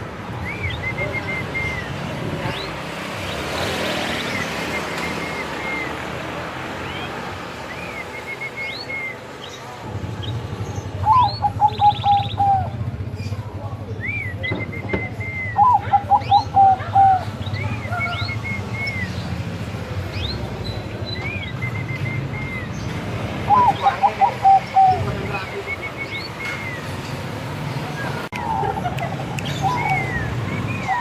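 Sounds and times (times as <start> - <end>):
birds chirping: 0.0 - 31.0
dove cooing: 11.0 - 12.8, 15.6 - 17.3, 23.5 - 25.2.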